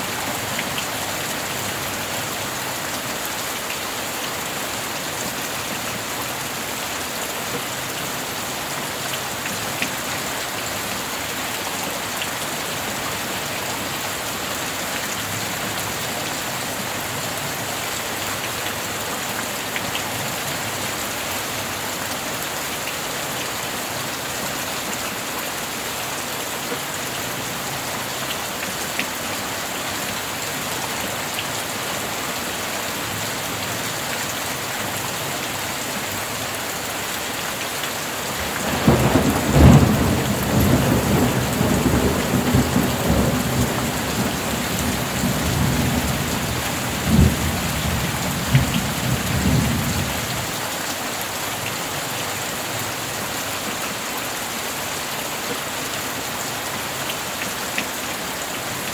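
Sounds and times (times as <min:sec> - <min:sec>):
heavy rainfall: 0:00.0 - 0:58.9
thunder rumbling and cracking: 0:38.4 - 0:50.4.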